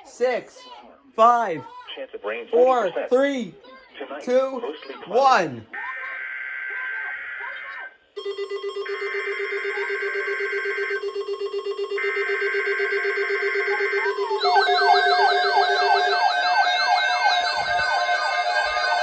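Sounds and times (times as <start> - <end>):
high steady alarm tone: 8.2 - 19.0
electronic siren sweeps: 8.9 - 19.0
fast-pulsing buzzing tone: 12.0 - 19.0.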